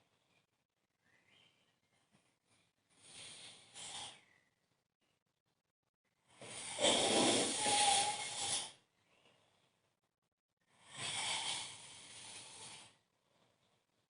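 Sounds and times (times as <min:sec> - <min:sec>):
person snoring: 0:06.4 - 0:08.8, 0:10.8 - 0:13.0.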